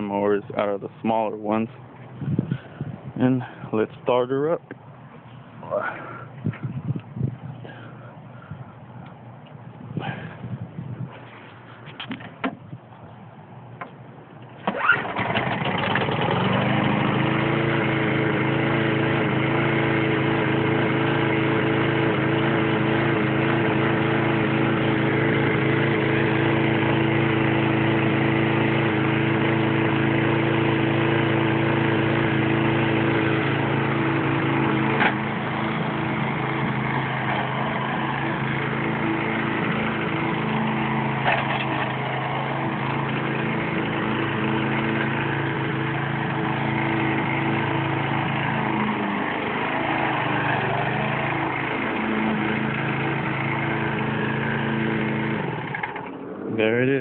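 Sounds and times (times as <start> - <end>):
lawn mower engine running: 13.6 - 57.0.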